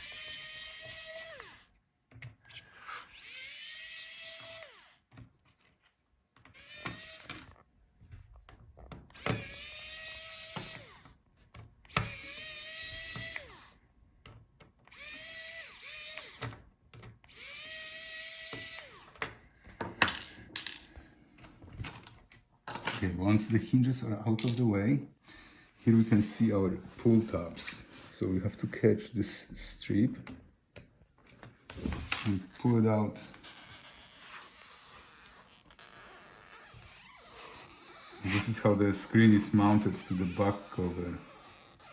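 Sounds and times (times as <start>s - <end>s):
electric screwdriver whirring: 0.0s - 1.7s, 3.0s - 5.0s, 6.5s - 7.4s, 9.1s - 11.1s, 11.9s - 13.8s, 14.9s - 16.6s, 17.3s - 19.3s, 33.4s - 41.9s.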